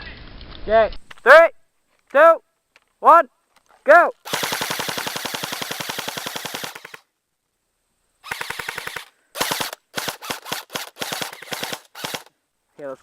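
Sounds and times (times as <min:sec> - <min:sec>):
airsoft gun firing bursts: 0:04.2 - 0:07.0, 0:08.2 - 0:12.3.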